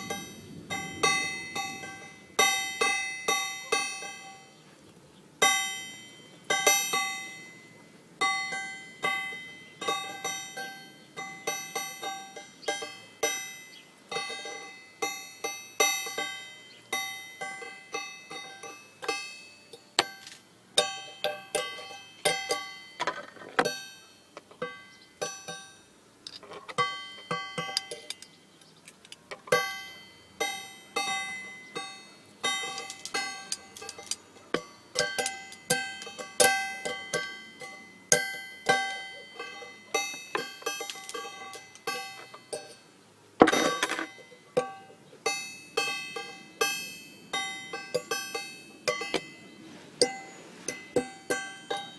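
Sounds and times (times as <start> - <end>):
plucked string instrument music: 29.4 - 51.9.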